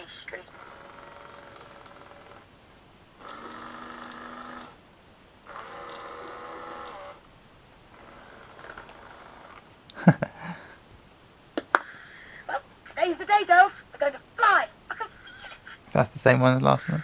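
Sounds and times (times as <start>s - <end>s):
small motor and gears whirring: 0.0s - 2.5s, 3.2s - 4.8s, 5.4s - 9.7s.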